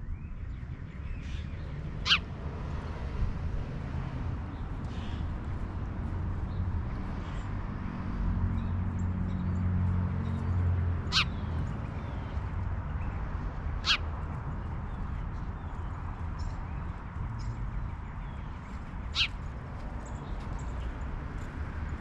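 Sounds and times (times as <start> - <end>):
bird calls: 1.1 - 2.3, 10.2 - 21.0.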